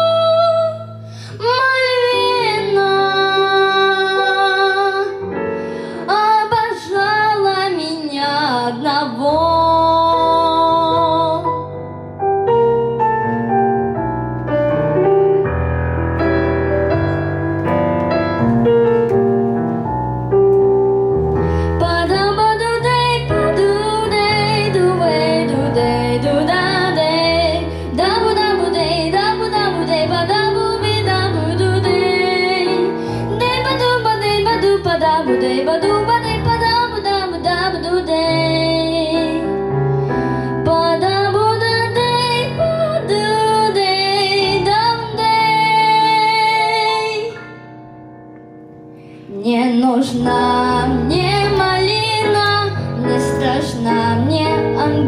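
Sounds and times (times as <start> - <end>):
girl singing: 0.0 - 5.2, 6.1 - 11.5, 21.8 - 39.5, 40.6 - 47.6, 49.3 - 55.0
keyboard backing track: 0.0 - 55.0.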